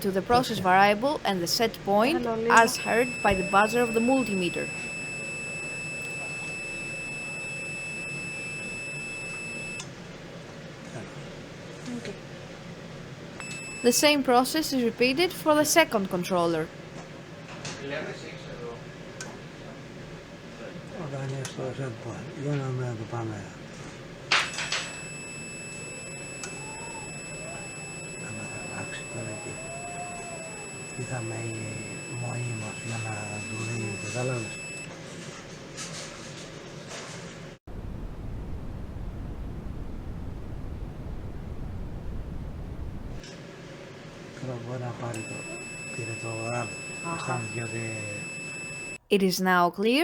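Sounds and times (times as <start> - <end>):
multimeter continuity buzzer tone: 2.5 - 9.9, 13.4 - 14.4, 24.4 - 34.9, 45.2 - 49.0.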